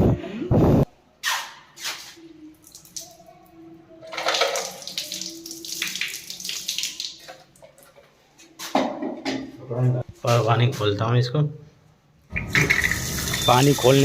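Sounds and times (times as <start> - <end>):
water running and splashing: 4.2 - 7.8, 12.3 - 14.0.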